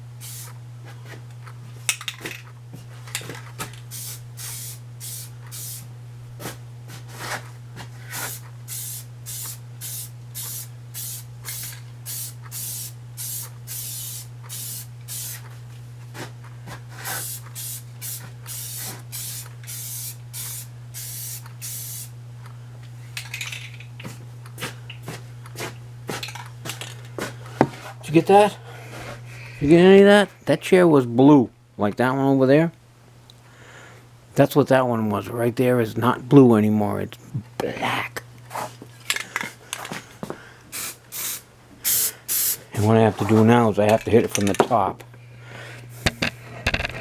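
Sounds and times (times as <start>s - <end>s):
steady low hum: 0.0s - 47.0s
spray paint can hissing: 0.2s - 0.6s, 3.9s - 5.9s, 8.1s - 15.5s, 17.0s - 22.1s, 40.7s - 42.7s.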